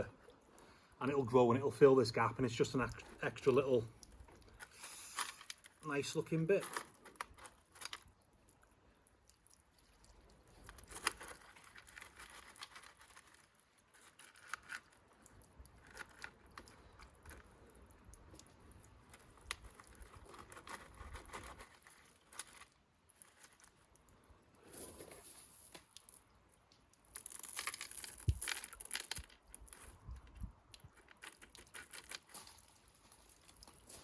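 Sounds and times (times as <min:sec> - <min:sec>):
gravel crunching: 0:27.0 - 0:34.0.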